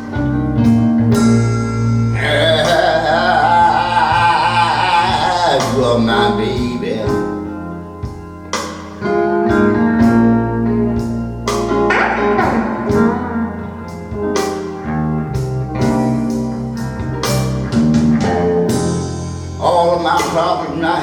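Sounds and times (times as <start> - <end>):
plucked guitar notes: 0.0 - 8.2, 9.0 - 21.0
steady bass line: 9.5 - 19.7.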